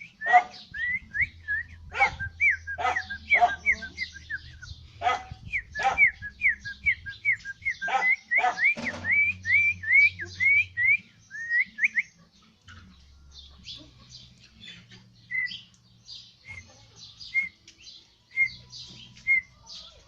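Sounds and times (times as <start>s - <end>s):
person whistling bird calls: 0.0s - 12.2s, 15.2s - 15.7s, 16.4s - 19.6s
dog barking: 0.2s - 0.6s, 1.9s - 2.2s, 2.8s - 3.8s, 5.0s - 6.2s, 7.8s - 8.7s.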